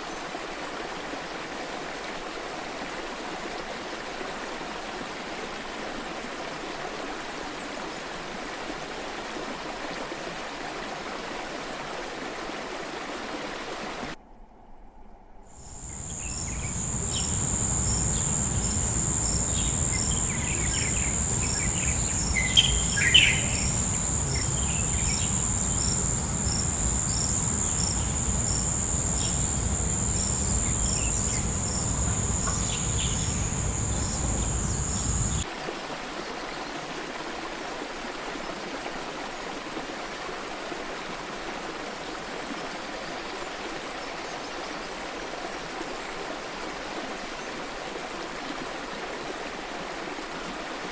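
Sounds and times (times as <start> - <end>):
stream rushing: 0.0 - 14.2, 16.0 - 50.9
bird chirps: 15.6 - 35.4
crickets trilling: 15.6 - 35.5
deep low hum: 16.3 - 35.4.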